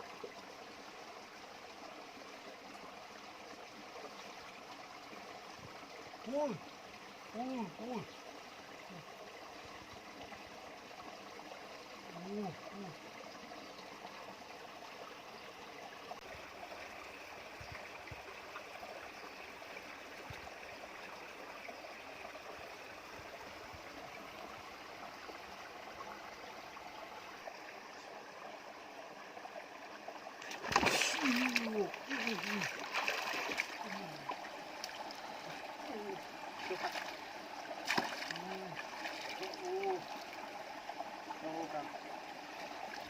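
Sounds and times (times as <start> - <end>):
flowing stream water: 0.0 - 43.0
brief voice: 6.2 - 6.6, 7.3 - 8.1, 12.0 - 13.0.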